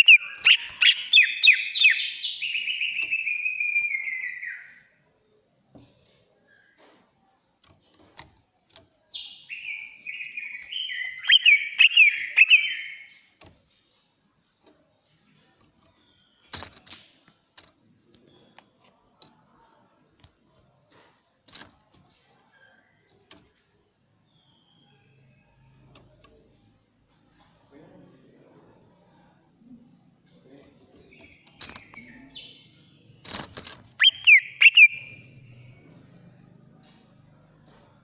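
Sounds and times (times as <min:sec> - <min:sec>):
bird whistling song: 0:00.0 - 0:04.9, 0:09.1 - 0:13.3, 0:34.0 - 0:35.7
short bird chirps: 0:00.0 - 0:04.9, 0:09.1 - 0:13.4, 0:34.0 - 0:35.8.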